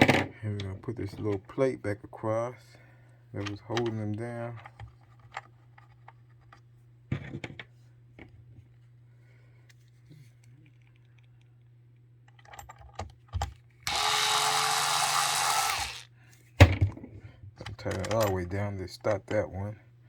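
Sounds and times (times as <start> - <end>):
small parts clicking: 13.9 - 16.0
electric screwdriver running: 13.9 - 16.1.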